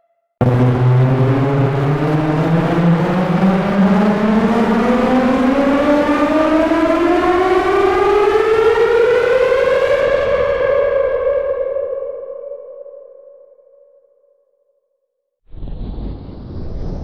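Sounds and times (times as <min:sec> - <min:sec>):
buzzy rising siren tone: 0:00.4 - 0:12.8.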